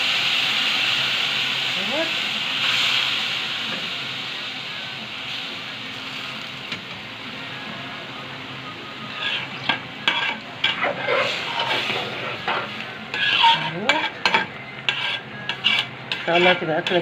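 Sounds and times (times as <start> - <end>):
liquid sizzling: 0.0 - 17.0
spoon scraping and clinking pot: 9.2 - 11.8, 13.1 - 17.0.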